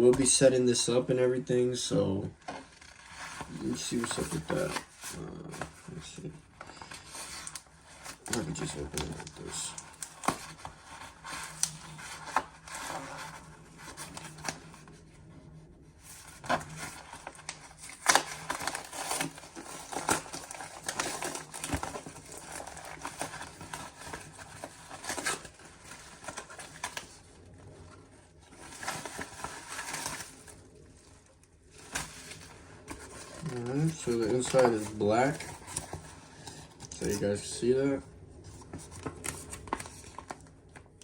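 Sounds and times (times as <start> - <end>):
packaging crinkling and tearing: 2.4 - 15.1, 16.0 - 27.8, 28.4 - 37.8, 38.4 - 41.0.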